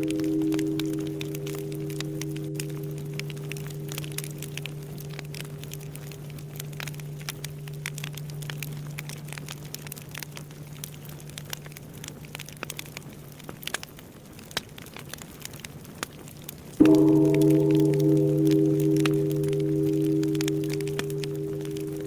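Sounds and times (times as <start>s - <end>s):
low hum of temple bell: 0.0s - 12.4s, 16.8s - 22.0s
bonfire crackling and popping: 0.0s - 22.0s.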